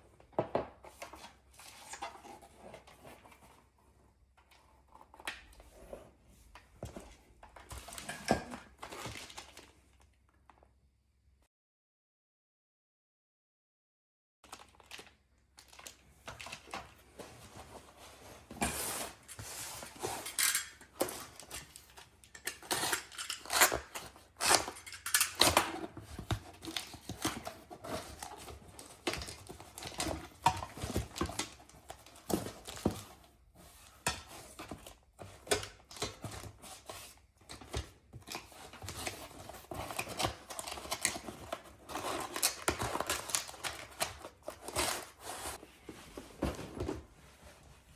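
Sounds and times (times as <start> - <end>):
packaging rustling and tearing: 14.5 - 33.0, 35.6 - 45.6
hard parts clicking and clinking: 18.7 - 27.3.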